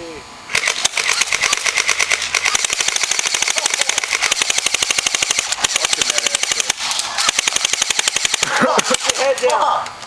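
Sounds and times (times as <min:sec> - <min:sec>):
airsoft gun firing full-auto: 0:00.5 - 0:09.4.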